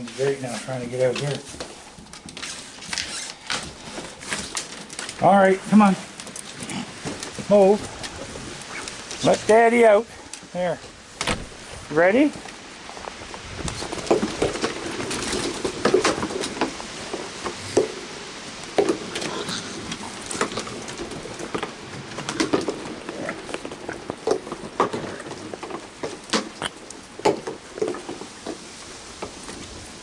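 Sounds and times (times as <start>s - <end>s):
raccoons churring: 6.0s - 10.5s, 17.6s - 28.1s.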